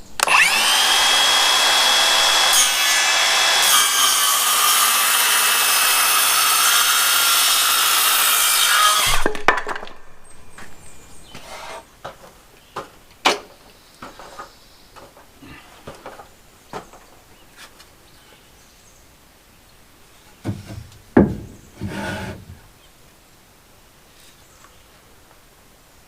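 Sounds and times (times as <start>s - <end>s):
loud thump: 9.0s - 10.8s
wooden knocks of lumber handled: 9.1s - 10.0s, 20.4s - 22.6s
short scraping rustle: 10.9s - 12.0s, 21.8s - 22.6s.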